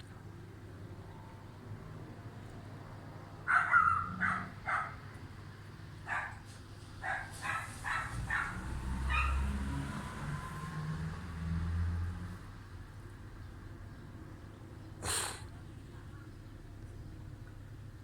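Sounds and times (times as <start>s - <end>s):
dog barking: 3.4s - 5.0s, 6.0s - 6.4s, 7.0s - 9.6s.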